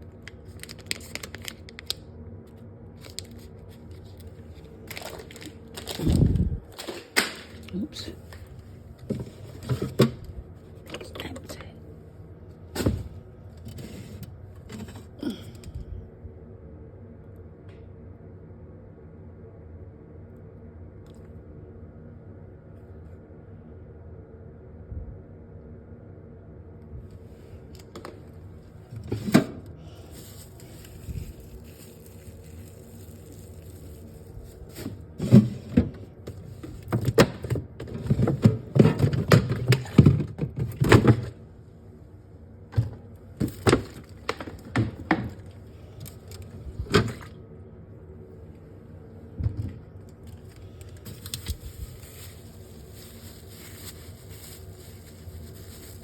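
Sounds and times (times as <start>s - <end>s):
steady low hum: 0.0s - 56.0s
shelves and drawers clunking: 42.8s - 45.5s.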